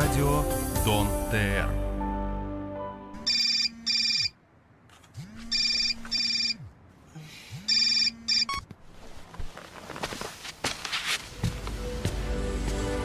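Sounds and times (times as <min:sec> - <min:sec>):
telephone ringing: 0:03.2 - 0:04.4, 0:05.5 - 0:06.6, 0:07.7 - 0:08.6.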